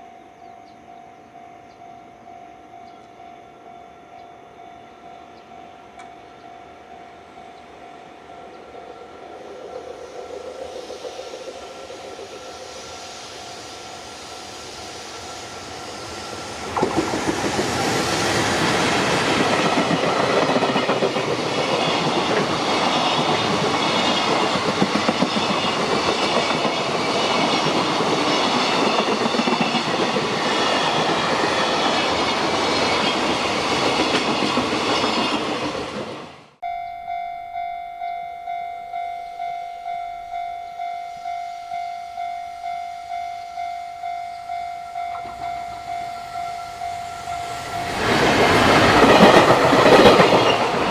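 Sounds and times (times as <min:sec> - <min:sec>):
level crossing alarm ringing: 0:00.0 - 0:09.4, 0:36.6 - 0:50.4
freight train passing: 0:00.7 - 0:50.9
wheels clattering over rail joints: 0:47.5 - 0:50.9.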